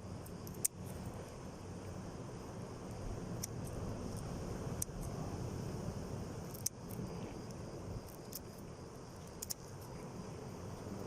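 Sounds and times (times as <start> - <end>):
low outdoor rumble: 0.0 - 11.0
sharp light clicks: 6.5 - 8.6, 9.2 - 9.7.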